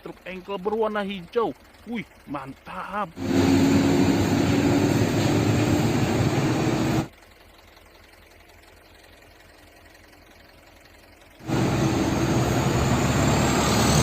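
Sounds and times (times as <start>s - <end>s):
truck engine running: 0.0s - 14.0s.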